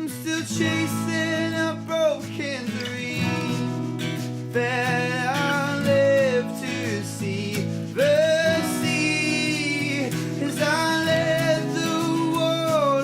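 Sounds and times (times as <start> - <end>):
guitar accompaniment: 0.0 - 13.0.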